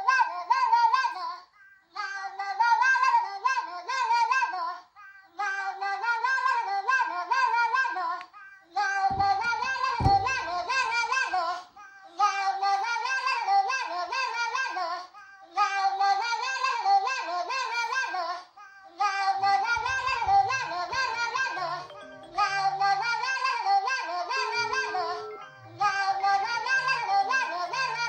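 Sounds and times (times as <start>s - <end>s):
low thud: 9.1s - 10.8s
phone alert melody: 19.9s - 23.2s, 24.4s - 28.0s.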